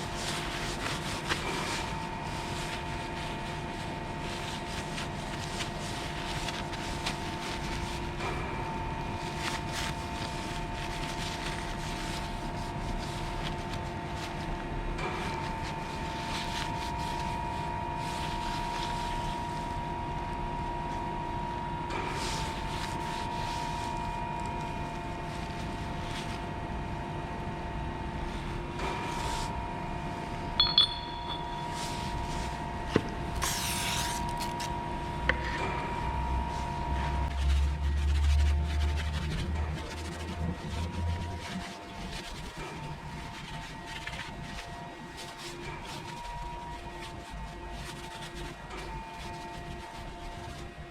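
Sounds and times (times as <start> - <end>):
light metallic clinks: 30.6 - 31.7.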